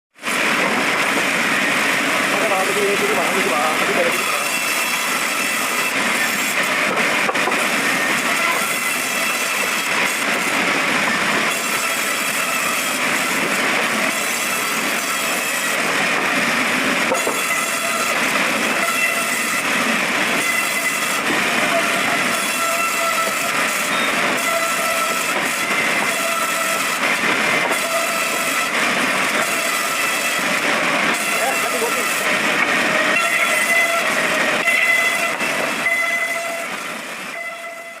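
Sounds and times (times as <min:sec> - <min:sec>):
bandsaw mill running: 0:31.2 - 0:32.4.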